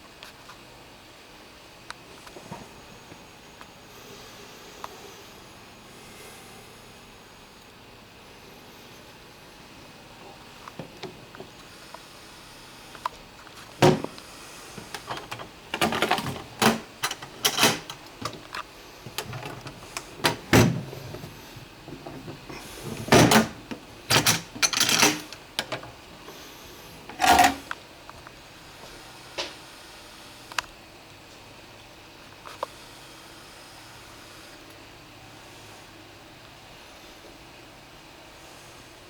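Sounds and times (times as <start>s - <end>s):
toolbox knocks and rattles: 13.8s - 14.1s, 19.2s - 21.3s, 21.9s - 25.8s.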